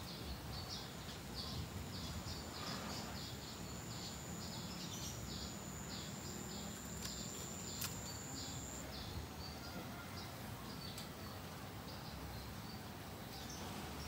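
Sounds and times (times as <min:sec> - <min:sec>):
steady high whine: 0:00.8 - 0:09.0
faint click: 0:10.9 - 0:11.1.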